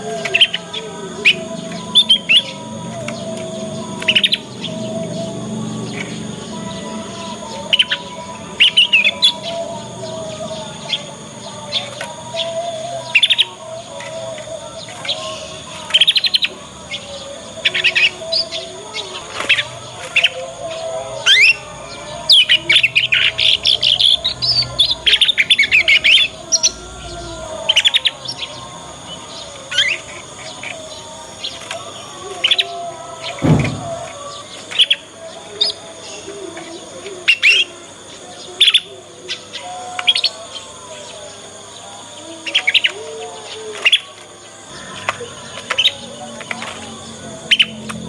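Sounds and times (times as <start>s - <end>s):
canary chirps and trills: 0.0s - 48.0s
low thump: 33.4s - 34.2s.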